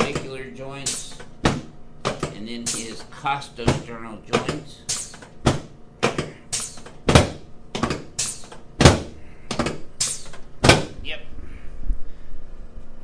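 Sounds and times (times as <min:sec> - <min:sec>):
sharp thuds of chiropractic thrusts: 0:00.9 - 0:03.0, 0:03.6 - 0:11.0.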